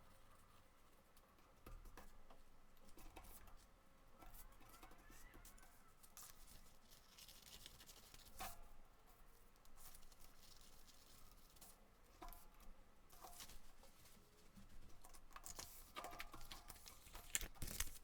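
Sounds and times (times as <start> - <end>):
paper rustling: 15.4 - 18.0.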